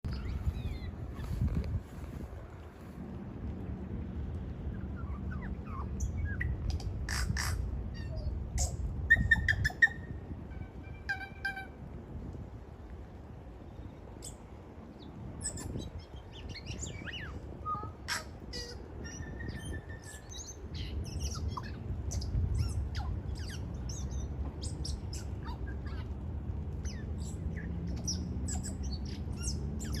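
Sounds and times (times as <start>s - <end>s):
low wind rumble: 0.0s - 30.0s
bird singing: 15.4s - 26.1s, 26.8s - 30.0s.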